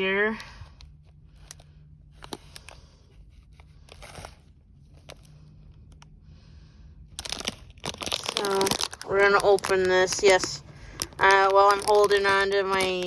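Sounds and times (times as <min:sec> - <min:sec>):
plastic bag crinkling: 0:07.1 - 0:13.0.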